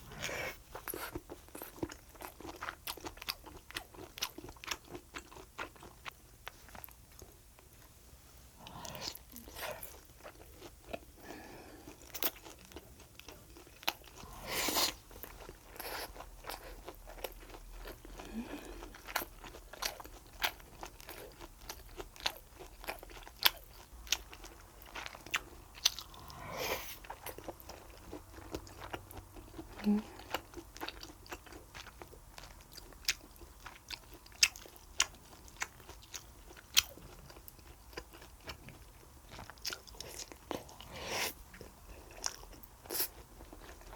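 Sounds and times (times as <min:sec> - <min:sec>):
chewing and crunching: 0:00.1 - 0:07.8, 0:08.6 - 0:43.9.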